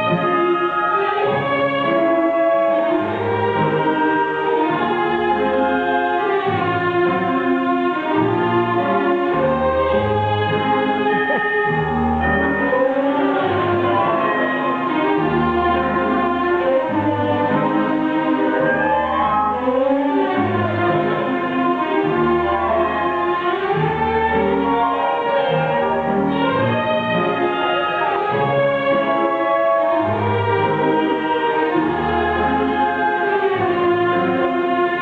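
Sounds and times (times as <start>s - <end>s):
orchestral string music: 0.0s - 35.0s
low bass notes: 10.4s - 16.2s.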